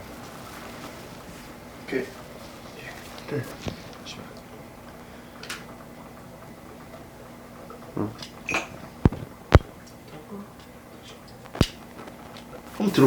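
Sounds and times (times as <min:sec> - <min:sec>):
audio crackling: 0:00.0 - 0:13.0
faint steady hum: 0:00.0 - 0:13.0
microphone connection clicks: 0:09.0 - 0:09.8, 0:11.3 - 0:12.6.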